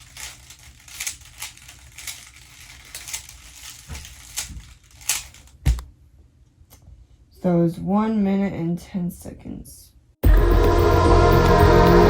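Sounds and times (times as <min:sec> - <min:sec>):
plastic puzzle cube clicking: 0:00.0 - 0:05.6
heavy thump: 0:05.6 - 0:05.9.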